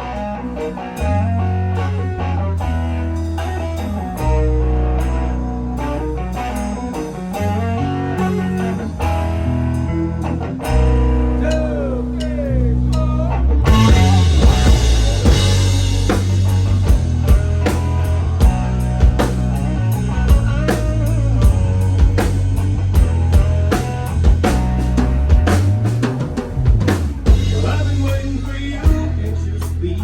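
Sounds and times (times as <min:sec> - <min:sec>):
instrumental rock band: 0:00.0 - 0:30.0.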